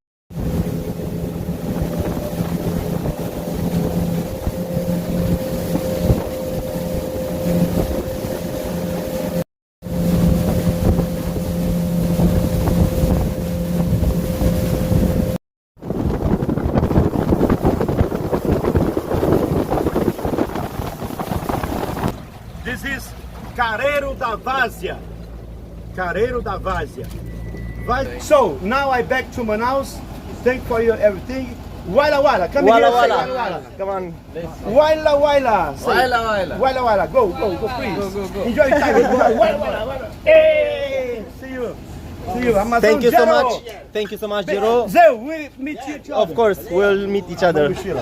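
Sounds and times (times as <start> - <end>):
gusty wind on microphone: 0.3 - 22.6
motorboat engine running: 0.3 - 43.5
rushing water: 0.3 - 48.0.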